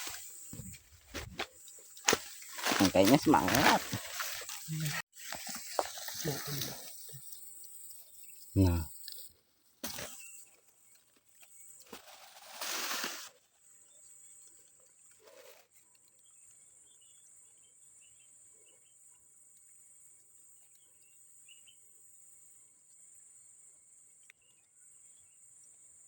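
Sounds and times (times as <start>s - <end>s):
crickets chirping: 0.0s - 15.6s.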